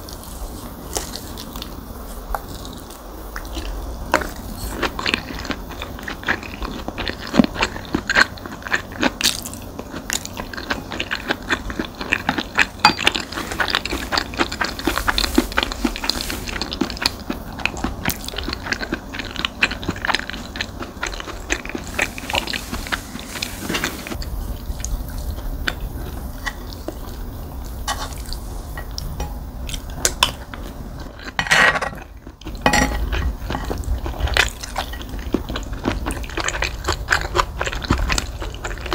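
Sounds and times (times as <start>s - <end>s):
wet chewing and biting: 32.0s - 38.9s
cutlery clinking on a dish: 32.6s - 33.1s.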